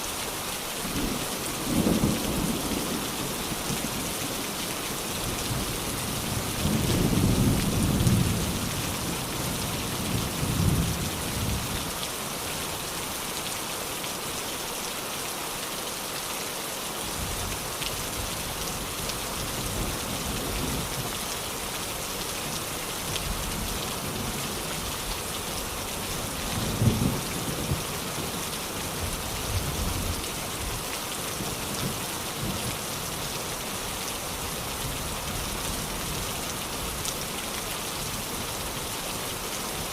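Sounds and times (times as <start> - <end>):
steady rain falling: 0.0 - 39.9
low rumbles of thunder: 5.4 - 11.7, 26.2 - 28.4.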